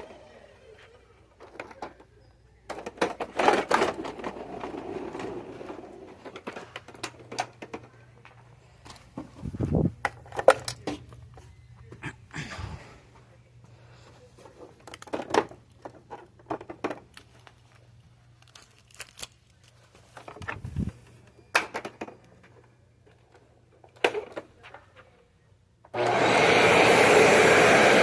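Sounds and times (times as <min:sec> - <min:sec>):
handling clicks and knocks: 0:06.1 - 0:12.0, 0:14.4 - 0:24.8
vacuum cleaner running: 0:25.9 - 0:28.0.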